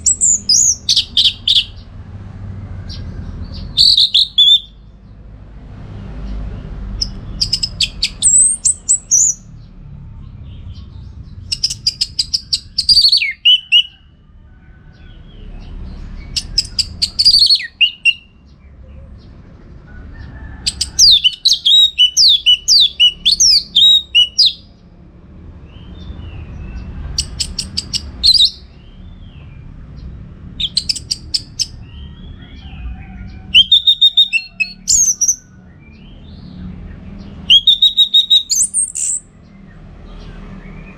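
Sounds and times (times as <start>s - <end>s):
thrush singing: 0.0s - 1.9s, 3.6s - 4.8s, 11.7s - 13.9s, 16.4s - 18.3s, 20.8s - 24.6s, 33.2s - 35.4s, 37.4s - 39.3s.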